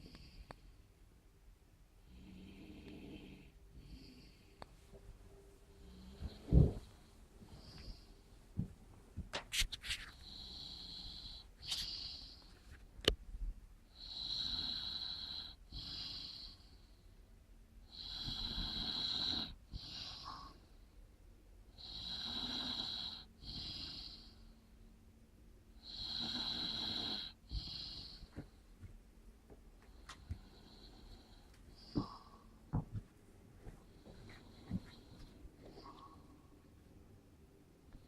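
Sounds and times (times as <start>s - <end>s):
man snoring: 10.2s - 12.3s, 14.0s - 16.6s, 17.9s - 20.3s, 21.8s - 24.2s, 25.8s - 28.2s.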